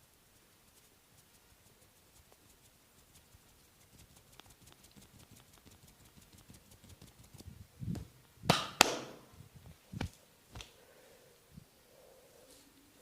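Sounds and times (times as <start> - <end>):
hands tapping and rubbing: 0.7 - 7.5
sharp hand smacks: 8.5 - 9.3.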